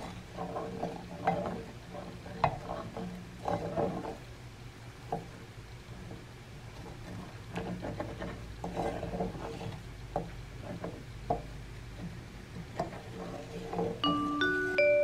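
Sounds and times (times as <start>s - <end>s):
faint steady hum: 0.0s - 15.0s
mallet percussion music: 14.0s - 15.0s.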